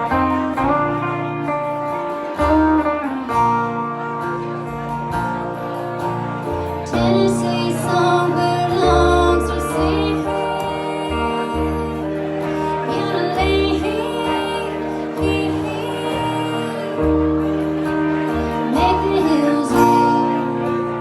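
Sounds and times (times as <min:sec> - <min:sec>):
acoustic guitar: 0:00.0 - 0:21.0
woman singing: 0:06.8 - 0:21.0.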